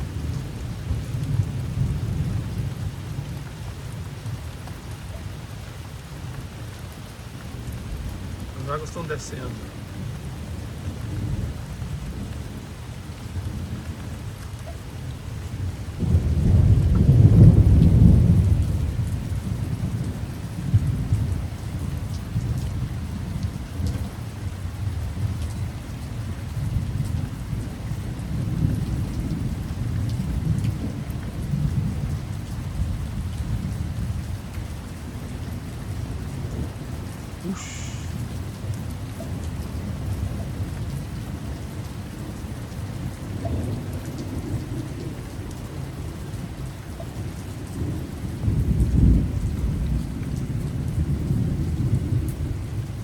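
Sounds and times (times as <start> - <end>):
heavy rain falling: 0.0 - 53.0
thunder rumbling: 16.0 - 21.5.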